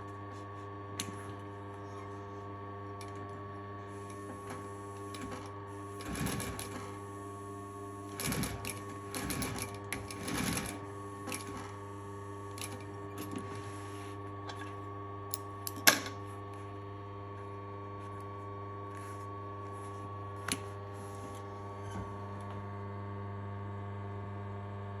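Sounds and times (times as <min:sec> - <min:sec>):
motor humming at idle: 0:00.0 - 0:15.8
sewing machine stitching: 0:03.0 - 0:07.1, 0:08.0 - 0:11.8.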